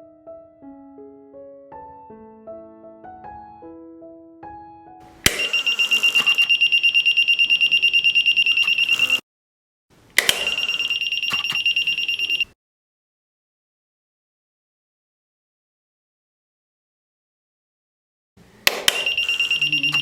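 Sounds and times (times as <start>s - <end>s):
soft piano music: 0.0s - 5.3s
door alarm buzzer pulsing: 5.1s - 9.2s, 10.2s - 12.6s, 18.7s - 20.0s
click: 5.2s - 6.4s, 10.1s - 11.8s, 18.6s - 20.0s.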